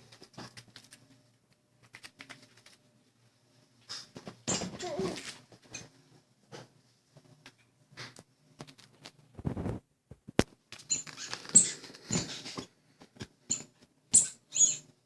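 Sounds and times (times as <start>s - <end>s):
small animal squeaking: 4.5s - 5.8s, 10.9s - 12.7s, 13.5s - 14.9s.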